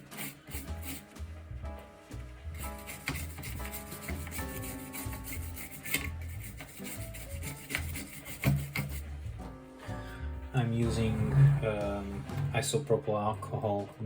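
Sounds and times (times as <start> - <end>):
soft background music: 0.0 - 14.0
scrubbing plastic controller: 2.5 - 9.5.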